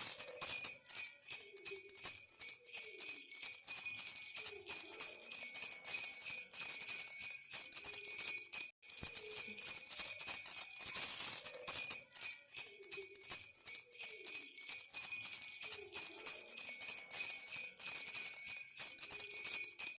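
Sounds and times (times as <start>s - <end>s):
bell rattle jingling: 0.0s - 20.0s.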